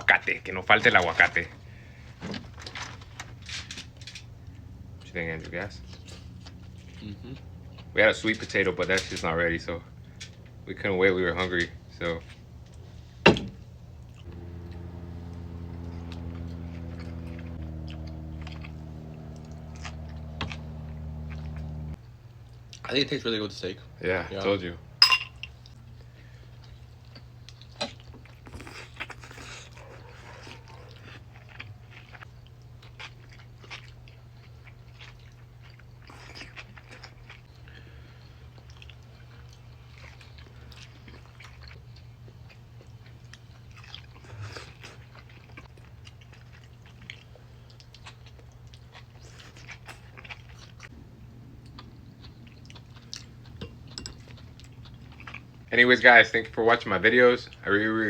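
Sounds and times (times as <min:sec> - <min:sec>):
steady low hum: 0:03.7 - 0:33.5, 0:47.1 - 0:57.7
chewing and biting food: 0:04.4 - 0:08.6, 0:14.0 - 0:22.9, 0:25.5 - 0:55.7.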